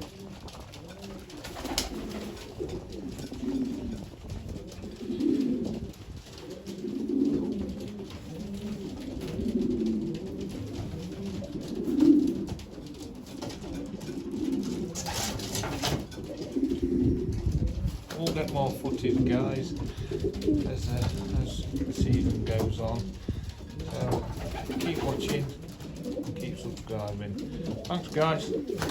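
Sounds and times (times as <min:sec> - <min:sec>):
pigeons cooing: 0:00.0 - 0:28.9.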